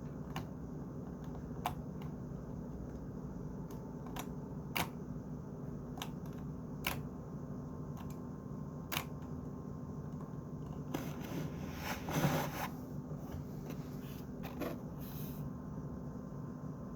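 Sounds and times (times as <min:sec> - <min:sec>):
low steady hum: 0:00.0 - 0:16.9.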